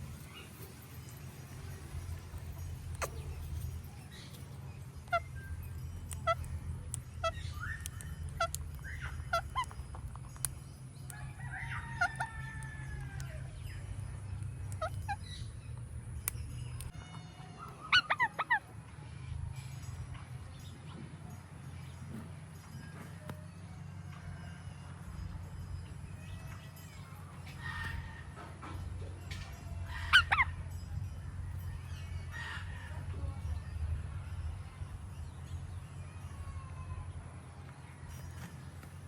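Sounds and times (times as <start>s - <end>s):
steady low rumble: 0.0s - 11.4s, 12.0s - 17.0s, 24.0s - 38.3s
parakeet calling: 1.9s - 10.2s, 14.3s - 16.8s, 17.5s - 18.8s, 29.5s - 30.7s.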